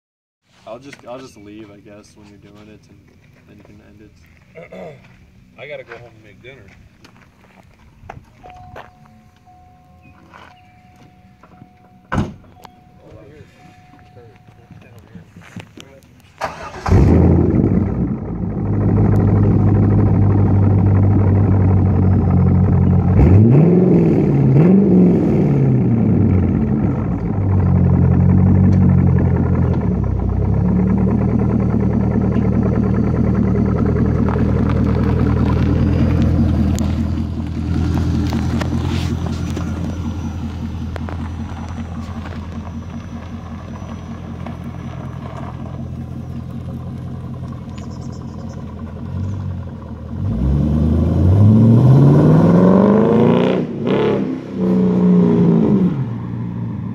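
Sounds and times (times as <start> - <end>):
deep exhaust rumble: 9.4 - 54.0
car engine accelerating hard: 16.4 - 56.9.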